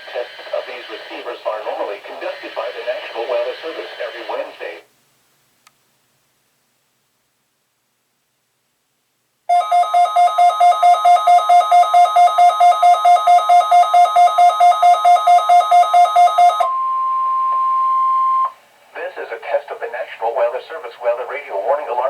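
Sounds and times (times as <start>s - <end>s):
radio static: 0.0s - 4.9s, 18.9s - 22.0s
alert alarm beeping rapidly: 9.5s - 16.8s
steady warning alarm tone: 9.5s - 18.6s.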